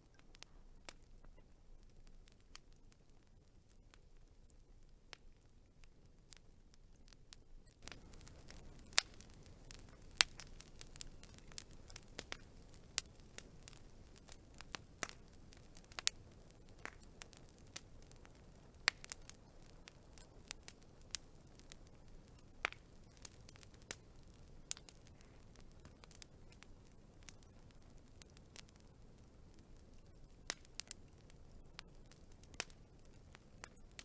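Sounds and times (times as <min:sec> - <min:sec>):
wood fire crackling: 0:00.0 - 0:34.0.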